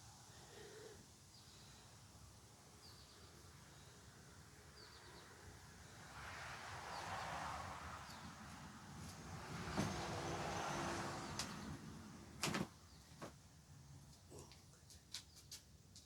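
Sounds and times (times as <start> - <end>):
passing vehicle: 5.6 - 12.4.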